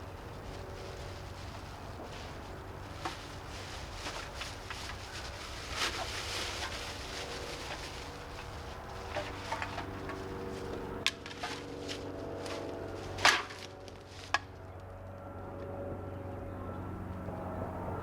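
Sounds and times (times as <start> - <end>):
distant engine drone: 0.0 - 18.0.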